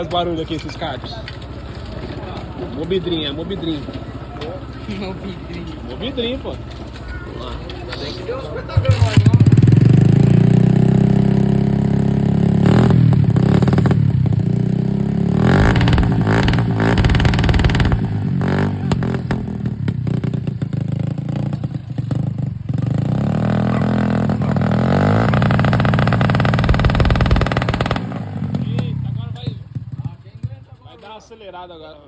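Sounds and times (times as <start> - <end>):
small motorcycle engine revving: 8.7 - 30.0.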